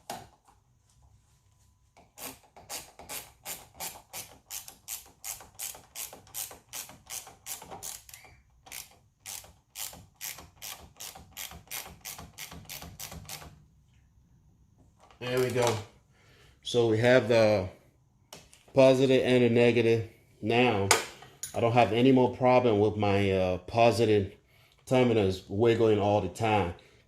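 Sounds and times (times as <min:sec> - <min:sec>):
ratchet clicking: 0:02.2 - 0:13.5.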